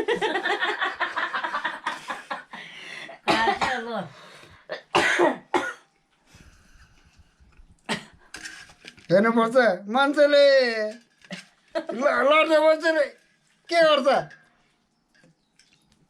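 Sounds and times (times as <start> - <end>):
person coughing: 3.3 - 4.1, 4.7 - 5.8, 7.9 - 8.2.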